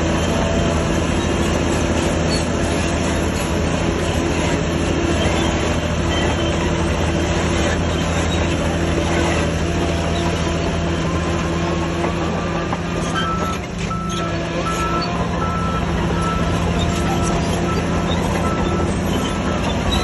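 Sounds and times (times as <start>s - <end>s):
diesel machinery running: 0.0s - 20.0s
reversing alarm beeping: 13.1s - 20.0s.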